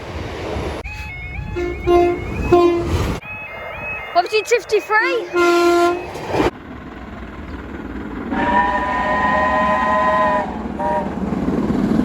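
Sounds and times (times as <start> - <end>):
passing train rumble: 0.0 - 12.0
train horn blasts: 1.4 - 3.2, 5.2 - 6.2, 8.3 - 11.2.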